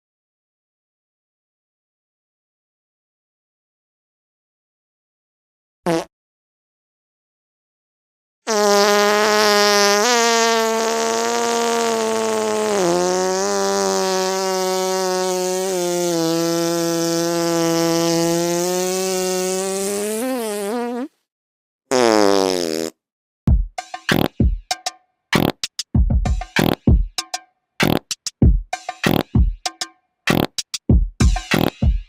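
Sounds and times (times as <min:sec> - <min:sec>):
long low buzzing fart: 0:08.5 - 0:21.0.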